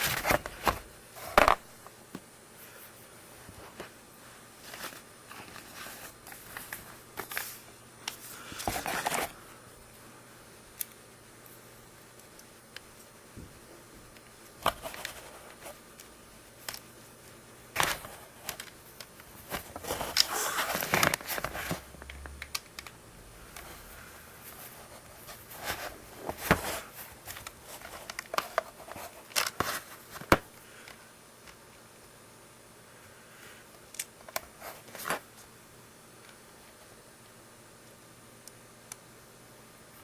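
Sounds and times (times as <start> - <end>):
crinkling: 4.6 - 9.4, 14.1 - 31.0.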